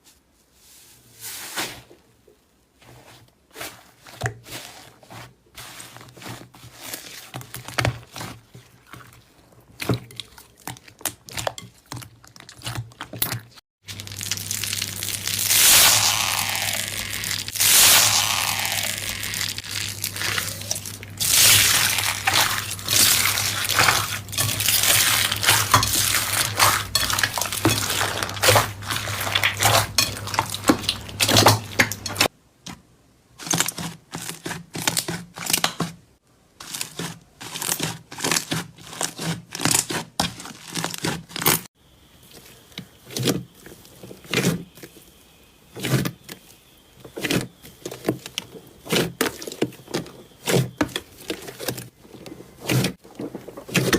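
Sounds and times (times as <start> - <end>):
slime crackling and crunching: 9.6 - 32.3, 36.6 - 41.7.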